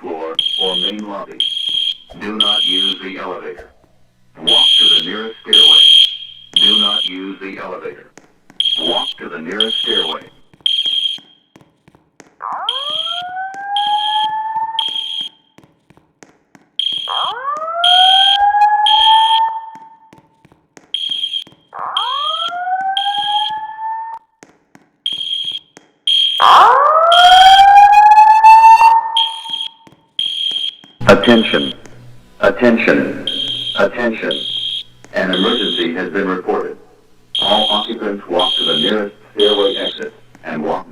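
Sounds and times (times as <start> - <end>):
spoken messages: 0.0 - 10.5, 31.0 - 40.9
high-pitched pulsing beep: 0.4 - 3.1, 4.5 - 7.2, 8.6 - 11.2, 13.8 - 15.3, 22.0 - 23.6, 29.2 - 31.8, 33.2 - 35.9, 37.4 - 40.0
rising whoop alarm tone: 12.5 - 15.3, 16.8 - 19.7, 21.8 - 24.2, 26.4 - 30.6, 33.2 - 35.8.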